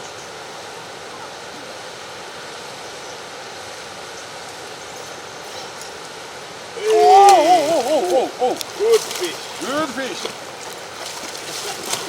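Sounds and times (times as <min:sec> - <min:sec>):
river water flowing: 0:00.0 - 0:12.0
person crying out: 0:06.8 - 0:09.1.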